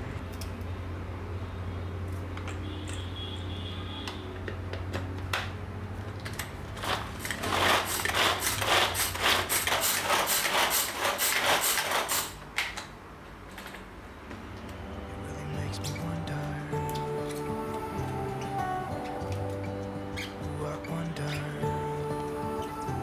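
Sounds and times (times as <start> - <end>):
food chopper chopping: 6.8 - 12.4
steady low hum: 13.9 - 23.0.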